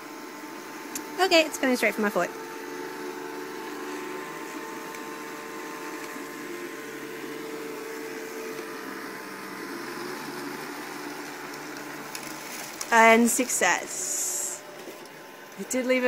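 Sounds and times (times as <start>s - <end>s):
robot vacuum cleaner humming: 0.0s - 16.0s.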